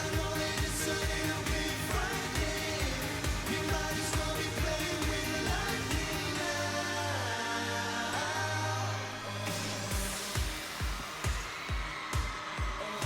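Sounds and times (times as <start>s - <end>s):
dance beat kick drum: 0.0s - 6.4s, 9.9s - 13.0s
male group vocals: 0.0s - 10.4s.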